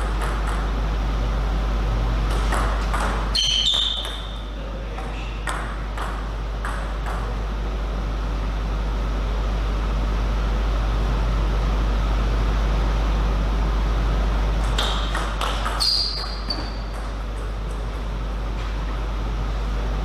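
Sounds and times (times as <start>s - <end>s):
table tennis ball clicking: 0.0s - 0.7s.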